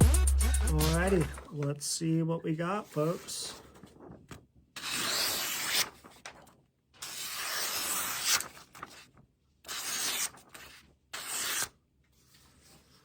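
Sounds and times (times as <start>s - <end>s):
knife slicing through paper: 4.8s - 6.2s, 7.0s - 9.1s, 9.7s - 12.8s.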